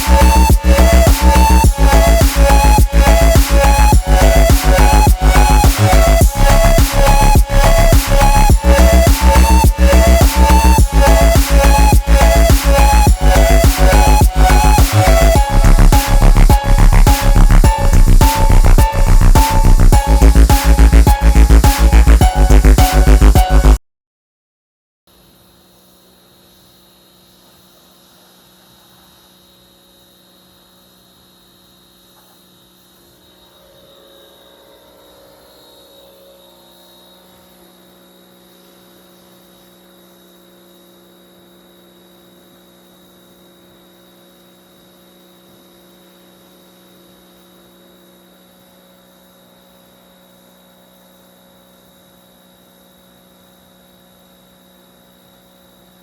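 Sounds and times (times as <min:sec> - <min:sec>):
faint steady hum: 0:25.1 - 0:56.0.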